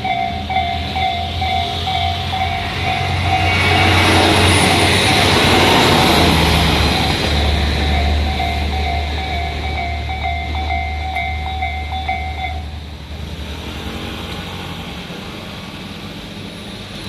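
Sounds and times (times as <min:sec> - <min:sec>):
level crossing alarm chime: 0:00.0 - 0:12.6
diesel railcar rumble: 0:00.0 - 0:17.0.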